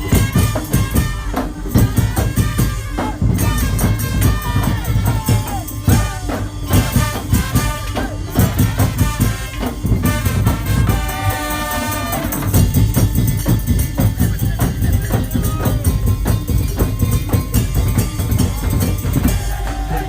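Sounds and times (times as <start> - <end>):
dense drums and percussion: 0.0 - 20.0
percussion ensemble playing: 0.0 - 20.0.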